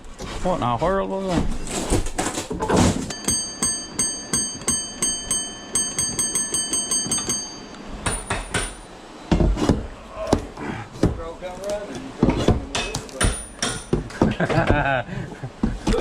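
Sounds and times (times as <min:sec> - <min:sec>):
electronic alarm beeping: 0:03.1 - 0:08.9.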